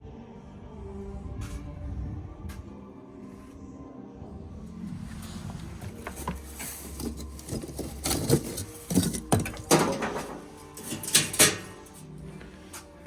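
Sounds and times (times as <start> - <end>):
objects knocking and clattering: 5.8 - 13.0.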